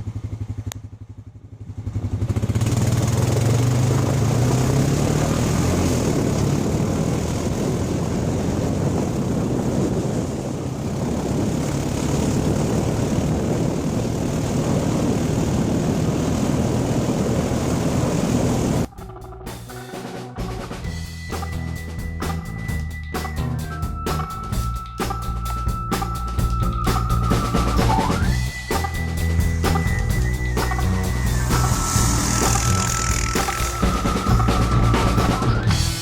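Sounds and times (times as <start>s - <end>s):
atv engine running: 0.0s - 36.0s
rushing noise: 25.0s - 36.0s.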